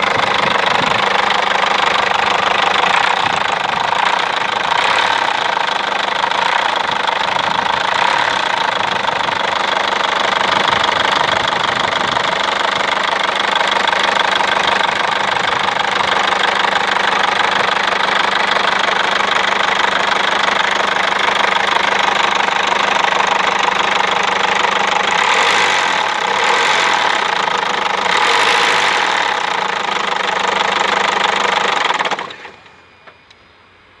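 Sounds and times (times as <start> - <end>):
diesel engine running: 0.0 - 34.0.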